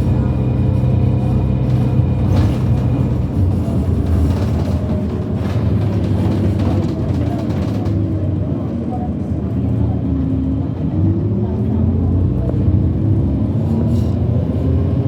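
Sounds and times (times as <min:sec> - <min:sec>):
bus engine drone: 0:00.0 - 0:15.0.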